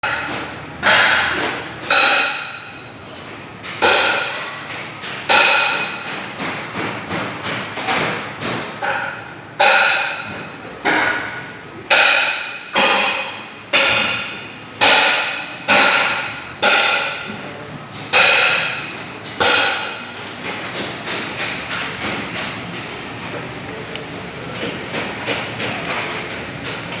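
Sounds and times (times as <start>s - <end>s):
wall fan metallic clanks: 18.0s - 27.0s.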